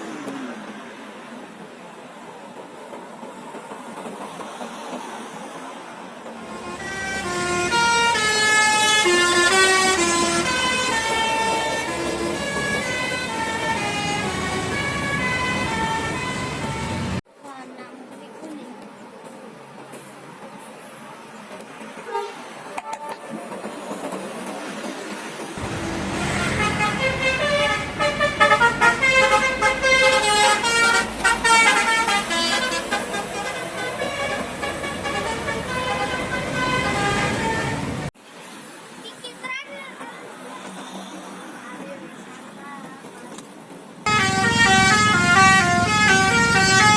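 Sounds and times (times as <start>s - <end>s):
multi-tone air horn tune: 6.5s - 17.2s, 25.6s - 38.1s, 44.1s - 46.9s.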